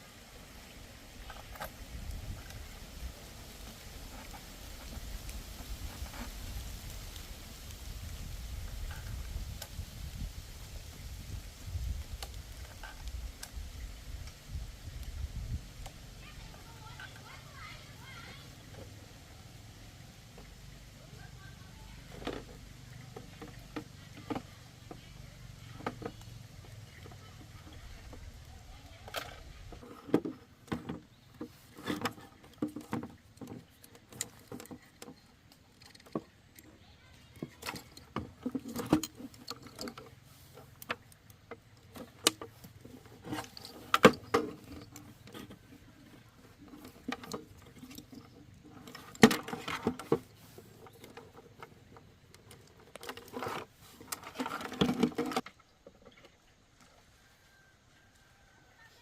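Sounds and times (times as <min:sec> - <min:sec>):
hand tools clicking and clattering: 0:29.0 - 0:55.6.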